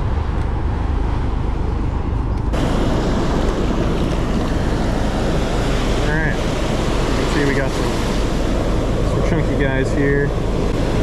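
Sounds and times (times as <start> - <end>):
wind rumbling on microphone: 0.0 - 11.0
ocean surf washing on beach: 2.5 - 11.0.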